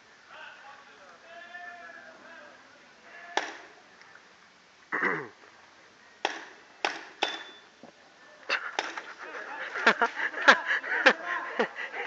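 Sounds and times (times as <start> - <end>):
paintball markers firing: 6.2 - 7.6.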